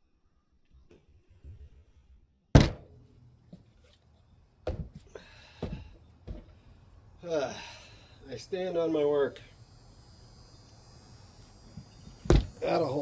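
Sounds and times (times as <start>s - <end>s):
footsteps knocking on wood: 2.6s - 2.8s, 4.7s - 5.0s, 5.6s - 6.5s, 12.3s - 12.6s
heavy thump on wooden stand: 2.6s - 2.9s, 4.7s - 5.0s, 5.6s - 6.5s, 12.2s - 12.6s.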